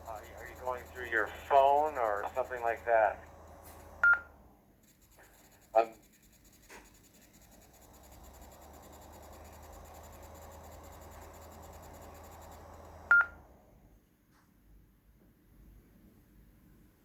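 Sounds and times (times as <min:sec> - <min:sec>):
radio hiss with low hum: 0:00.0 - 0:04.3
high-pitched radio whine: 0:00.0 - 0:13.4
short sharp beep: 0:04.0 - 0:04.3, 0:13.1 - 0:13.4.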